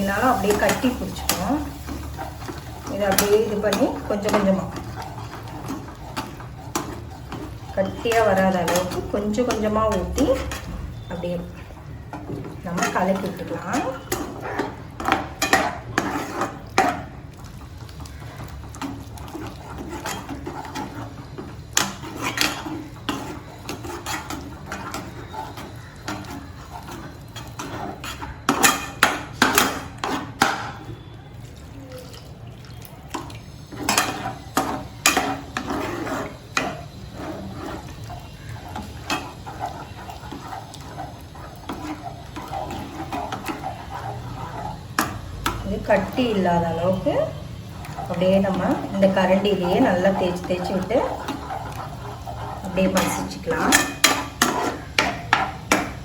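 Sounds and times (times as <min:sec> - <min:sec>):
metal ladle scraping a pan: 0:00.0 - 0:31.1, 0:33.1 - 0:56.0.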